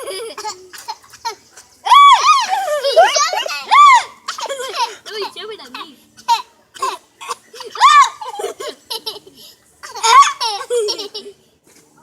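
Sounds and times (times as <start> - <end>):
high-pitched laughter and squeals: 1.9 - 4.9, 9.8 - 11.3.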